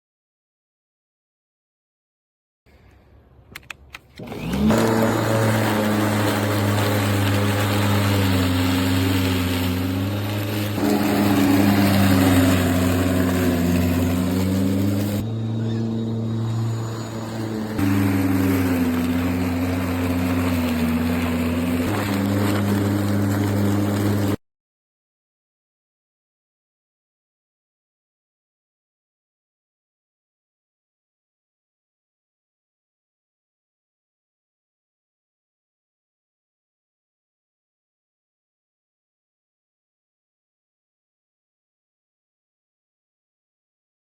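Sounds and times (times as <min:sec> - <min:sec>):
electric lawn mower running: 0:04.1 - 0:24.4.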